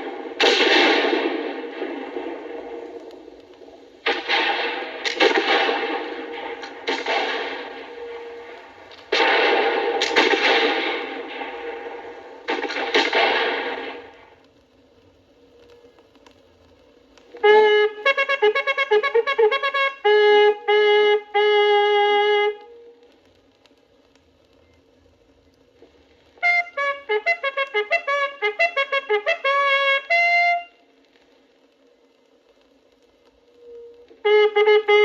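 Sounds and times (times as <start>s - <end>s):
cavalry bugle calls: 4.0s - 14.3s, 17.3s - 23.0s, 26.4s - 30.8s, 33.6s - 35.0s.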